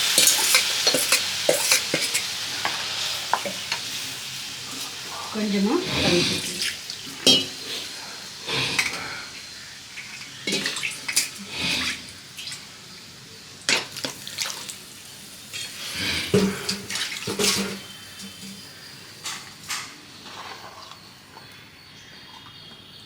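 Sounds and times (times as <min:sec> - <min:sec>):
utensil clinking on pan: 0:07.2 - 0:07.6
water splashing into gravy: 0:13.7 - 0:14.8.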